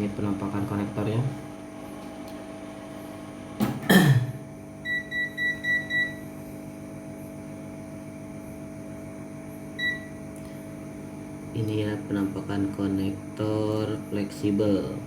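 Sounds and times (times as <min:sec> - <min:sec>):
hot air station humming: 0:00.0 - 0:15.0.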